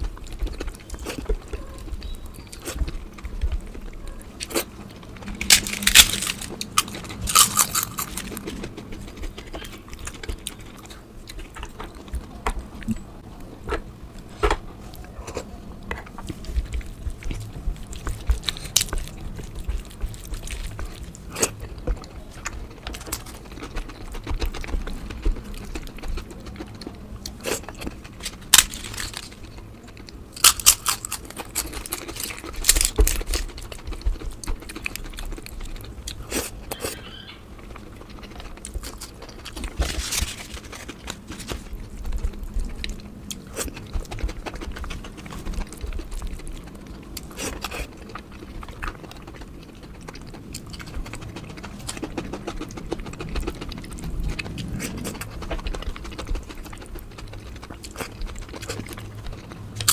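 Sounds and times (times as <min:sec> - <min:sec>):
chewing and crunching food: 0:00.0 - 0:59.9.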